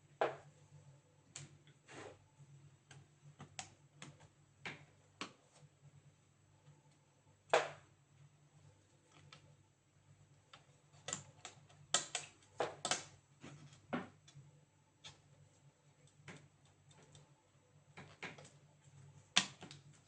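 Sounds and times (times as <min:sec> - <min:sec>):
faint steady hum: 0:00.0 - 0:20.0
laptop parts clicking and knocking: 0:10.5 - 0:14.4, 0:17.9 - 0:18.6, 0:19.3 - 0:20.0.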